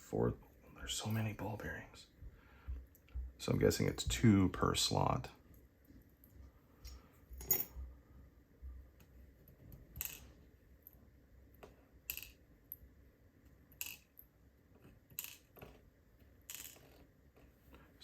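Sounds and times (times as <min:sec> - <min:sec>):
metal parts clicking on hard surface: 0:12.1 - 0:12.4, 0:13.7 - 0:14.2, 0:15.1 - 0:15.7, 0:16.5 - 0:17.0.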